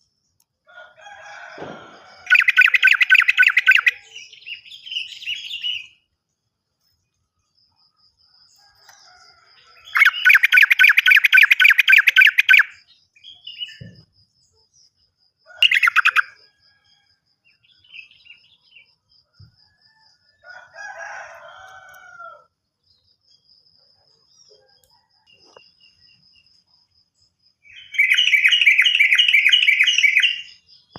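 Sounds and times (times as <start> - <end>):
bird rapid rattling song: 2.2 - 4.0, 9.8 - 12.8, 15.6 - 16.4, 27.7 - 30.5
fast high bird ticking call: 2.2 - 4.1, 9.9 - 12.8, 15.6 - 16.4, 27.7 - 30.5.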